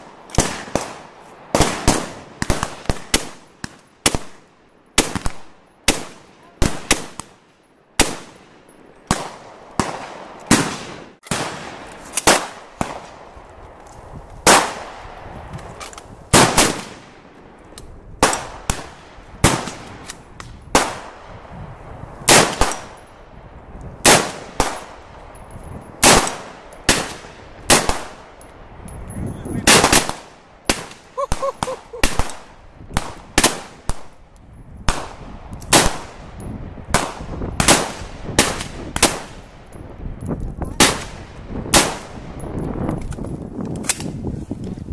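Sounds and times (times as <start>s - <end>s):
rifle shots: 0.3s - 7.4s, 9.1s - 13.2s, 14.4s - 15.0s, 16.3s - 17.1s, 20.7s - 21.2s, 22.3s - 23.0s, 24.0s - 25.0s, 26.0s - 28.3s, 29.6s - 34.1s, 36.9s - 39.5s, 40.8s - 42.2s.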